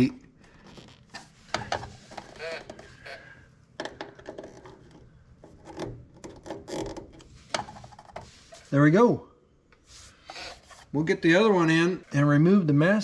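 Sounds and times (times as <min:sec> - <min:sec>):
plastic lens clicking and creaking: 0:00.5 - 0:08.1.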